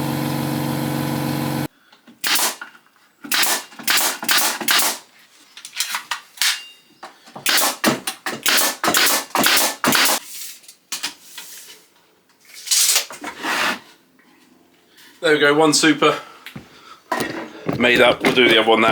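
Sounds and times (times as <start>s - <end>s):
nails driven into wood: 2.2s - 5.0s, 7.4s - 10.2s.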